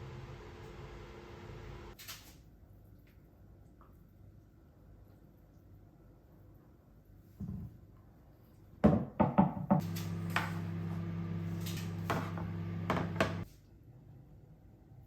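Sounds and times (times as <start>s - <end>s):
kitchen appliance humming: 0.0s - 2.0s, 9.8s - 13.5s.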